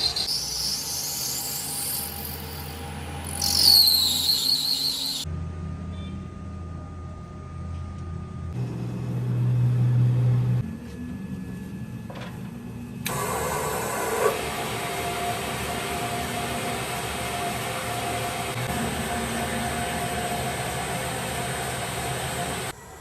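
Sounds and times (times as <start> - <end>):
metal lathe motor hum: 0.0 - 5.3, 12.0 - 22.8.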